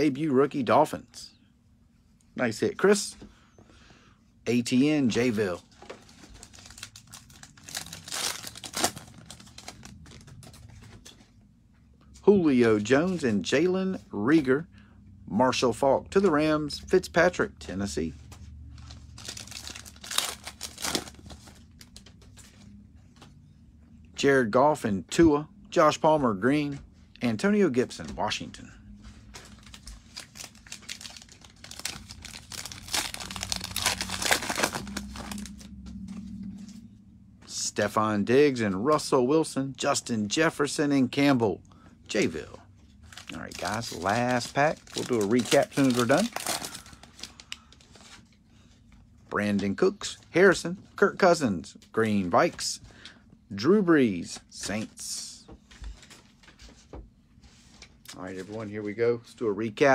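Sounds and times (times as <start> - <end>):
cards rustling: 5.0 - 11.4, 18.2 - 23.3, 29.0 - 36.0, 42.2 - 48.9
foil wrapper crinkling and tearing: 5.1 - 11.1, 18.8 - 22.2, 29.3 - 35.7, 43.0 - 48.4.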